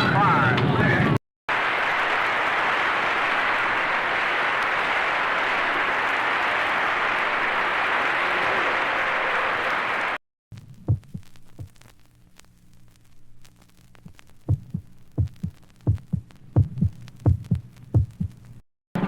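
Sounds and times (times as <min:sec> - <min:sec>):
crowd applause: 0:01.5 - 0:10.2.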